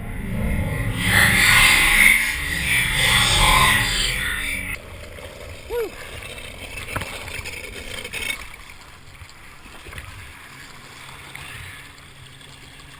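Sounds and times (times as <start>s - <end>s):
jet ski rumbling: 0.0s - 8.9s
water noise: 0.0s - 12.9s.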